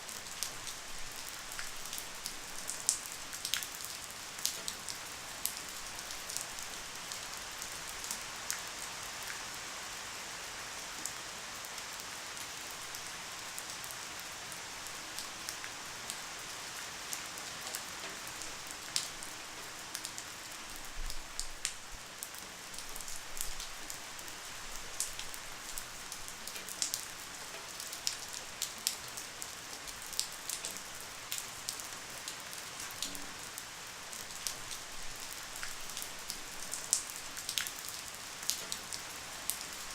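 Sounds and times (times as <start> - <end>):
light rain hissing: 0.0 - 39.9
raindrops ticking on surface: 0.1 - 8.7, 17.0 - 39.9.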